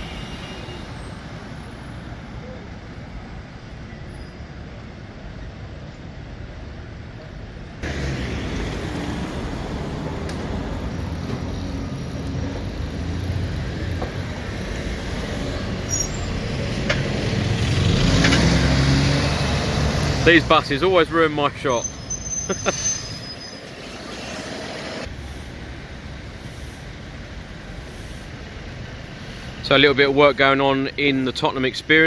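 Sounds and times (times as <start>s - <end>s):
road traffic: 0.0s - 32.0s
bus engine running: 7.8s - 23.4s.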